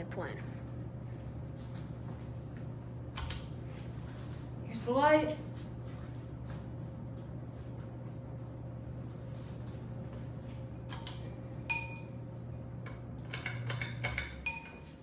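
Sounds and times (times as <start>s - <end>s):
ceiling fan humming: 0.0s - 15.0s
light ringing clinks: 11.0s - 12.7s, 13.3s - 15.0s.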